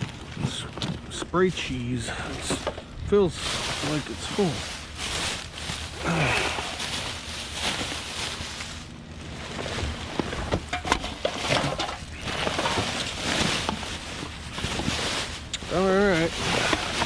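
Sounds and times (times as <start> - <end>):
steady background hiss: 0.0 - 17.0
trash rustling: 0.0 - 17.0.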